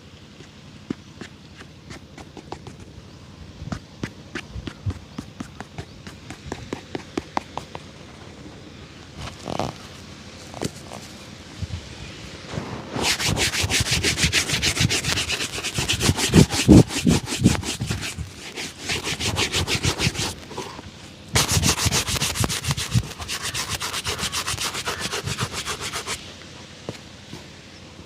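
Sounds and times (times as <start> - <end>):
shoe brushing strokes: 0.4 - 3.0, 3.7 - 8.0, 9.2 - 11.4, 12.4 - 26.3.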